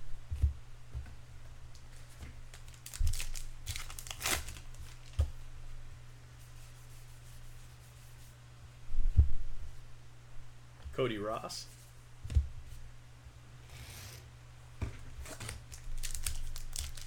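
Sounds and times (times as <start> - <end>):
wrapper tearing open: 2.5 - 5.2, 15.2 - 17.0.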